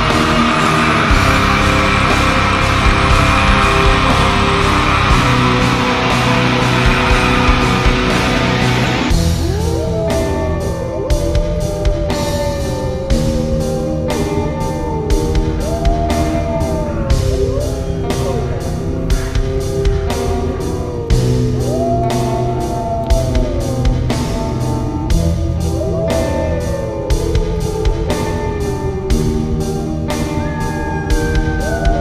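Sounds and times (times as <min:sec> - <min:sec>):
dense wash of sound: 0:00.0 - 0:09.3
drum kit beat: 0:00.0 - 0:32.0
guitars: 0:00.0 - 0:32.0
sliding lead melody: 0:00.0 - 0:32.0.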